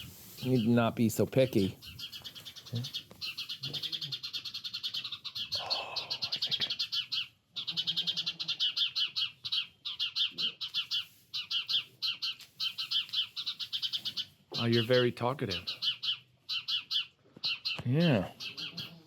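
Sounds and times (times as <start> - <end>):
short rustle: 0.0 - 1.6
small birds chirping: 0.0 - 19.0.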